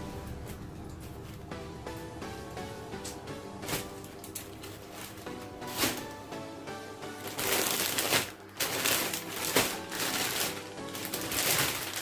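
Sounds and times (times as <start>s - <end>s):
background music: 0.0s - 12.0s
gift packaging crinkling: 7.1s - 12.0s.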